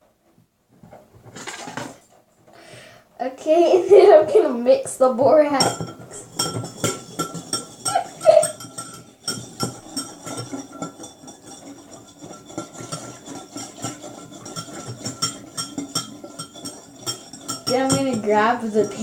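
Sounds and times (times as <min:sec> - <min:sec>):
spoon clinking against bowl: 0:05.6 - 0:19.0.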